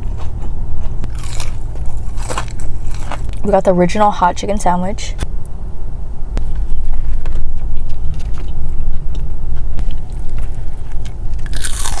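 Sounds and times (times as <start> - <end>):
crunching and chewing: 0.0 - 3.4, 6.4 - 12.0
loud steady low rumble: 0.0 - 12.0
hissing crunch: 0.2 - 3.4.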